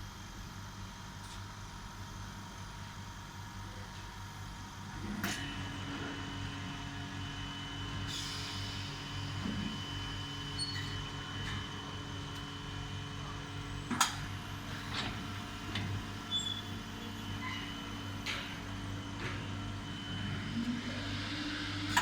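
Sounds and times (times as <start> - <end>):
cutting machine electric hum: 5.0 - 22.0.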